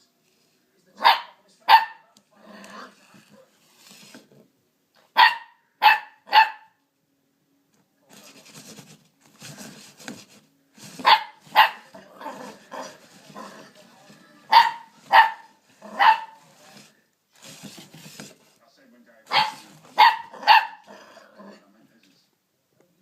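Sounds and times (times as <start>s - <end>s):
puppy barking: 1.0s - 2.1s, 5.1s - 6.8s, 11.0s - 13.0s, 14.5s - 16.4s, 19.3s - 20.9s
scuffling noise: 8.1s - 18.6s, 19.3s - 20.3s.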